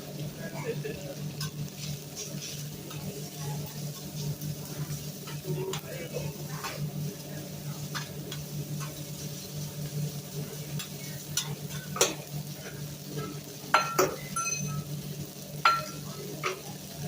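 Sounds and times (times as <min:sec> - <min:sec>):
food sizzling: 0:00.0 - 0:17.0
metal spatulas scraping griddle: 0:01.4 - 0:03.0
sharp ringing metal clanks: 0:13.8 - 0:14.8.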